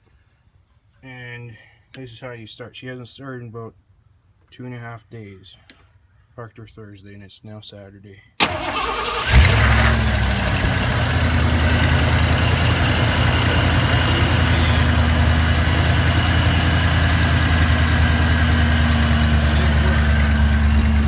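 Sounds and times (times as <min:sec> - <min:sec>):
pickup engine idling: 0:08.4 - 0:21.0.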